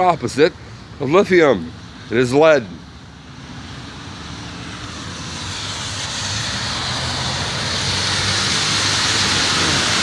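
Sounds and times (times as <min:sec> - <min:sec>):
engine approaching: 0:00.0 - 0:10.0
rush of noise: 0:02.1 - 0:10.0.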